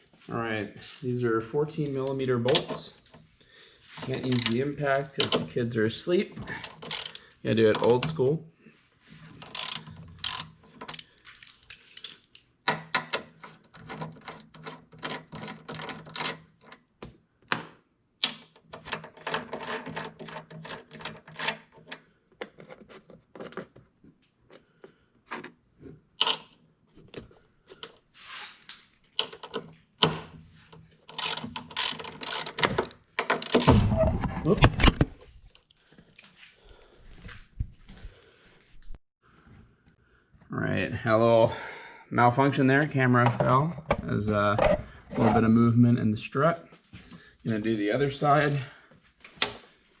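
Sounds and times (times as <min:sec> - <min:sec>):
hand ratchet clicking: 0:04.2 - 0:04.6, 0:06.6 - 0:07.3, 0:09.4 - 0:12.4, 0:31.1 - 0:33.7, 0:48.2 - 0:48.7.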